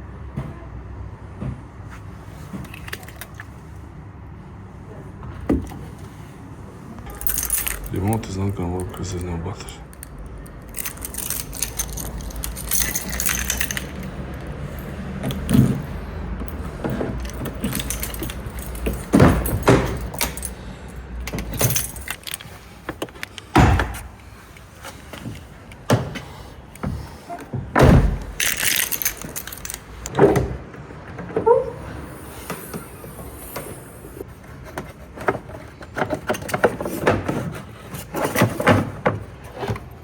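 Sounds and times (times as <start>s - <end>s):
car keys jangling: 2.7s - 3.4s, 7.0s - 25.9s, 27.8s - 30.2s.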